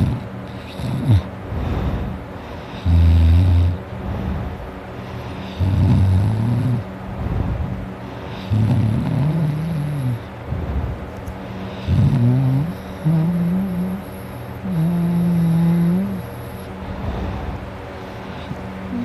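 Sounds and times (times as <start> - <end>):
person snoring loudly: 0.0 - 1.3, 2.8 - 3.8, 5.4 - 6.8, 8.3 - 10.3, 11.8 - 16.5
raspy breaths: 0.0 - 19.0.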